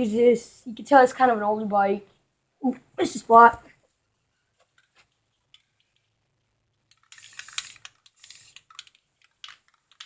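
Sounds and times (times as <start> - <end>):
spray can hissing: 7.2 - 8.6.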